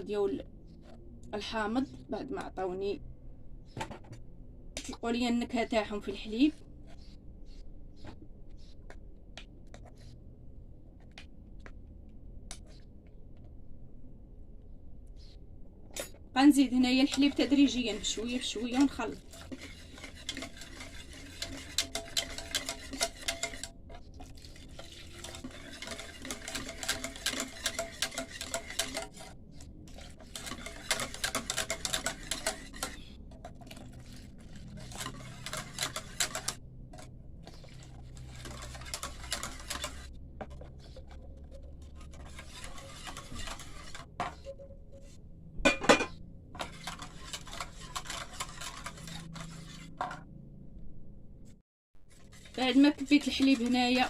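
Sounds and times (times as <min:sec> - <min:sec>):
utensil stirring in a bowl: 0:16.4 - 0:45.2, 0:46.1 - 0:50.2, 0:52.0 - 0:54.0.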